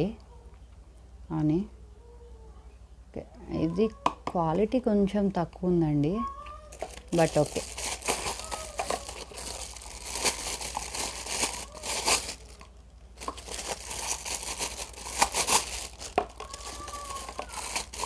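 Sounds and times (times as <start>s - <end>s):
plastic packaging crinkling: 6.7s - 18.0s.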